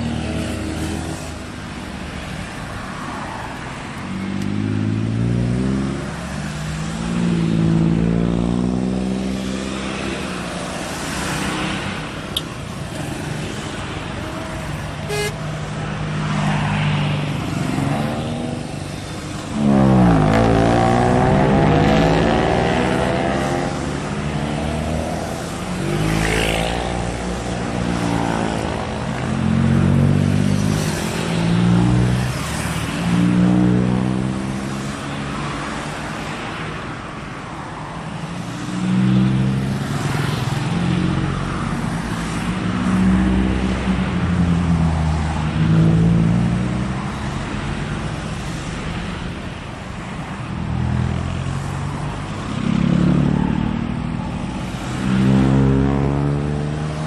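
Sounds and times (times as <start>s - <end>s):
car engines revving and passing: 0.0s - 57.0s.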